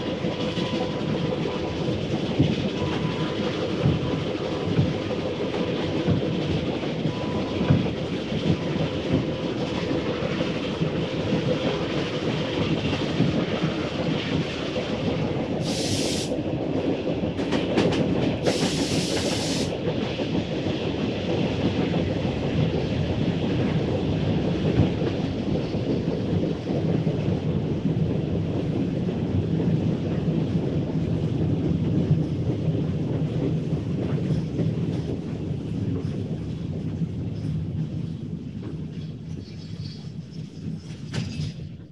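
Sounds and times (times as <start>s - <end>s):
train wheels clattering on rails: 0.0s - 41.9s
steam hissing: 15.6s - 16.4s, 18.3s - 19.8s.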